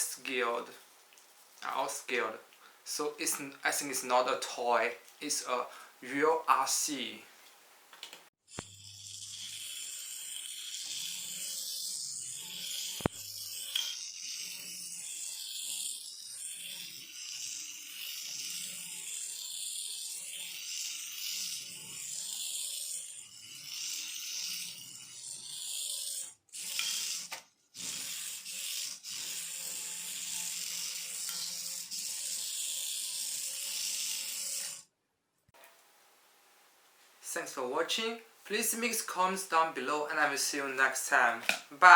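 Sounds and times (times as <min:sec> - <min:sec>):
toy car motor whirring: 0:08.5 - 0:34.9.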